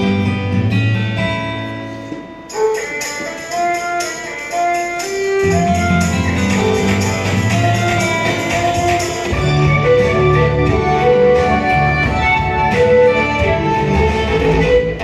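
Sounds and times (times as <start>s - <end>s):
instrumental music: 0.0s - 15.0s
bass line: 5.5s - 15.0s.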